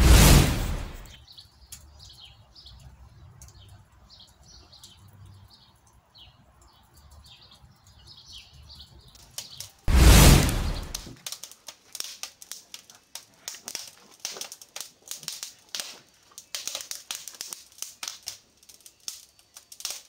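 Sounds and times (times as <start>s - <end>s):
loud whoosh: 0.0s - 1.1s, 9.9s - 11.0s
small birds chirping: 1.1s - 11.1s, 15.3s - 20.0s.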